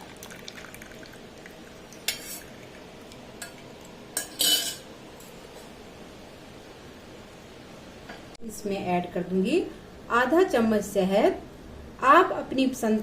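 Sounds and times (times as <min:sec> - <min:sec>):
metal utensils clinking on dishes: 0:04.2 - 0:04.9.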